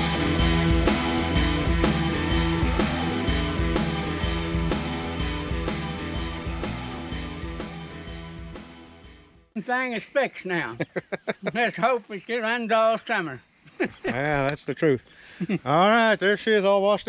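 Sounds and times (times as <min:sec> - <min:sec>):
rock music with guitar and drums: 0:00.0 - 0:09.4.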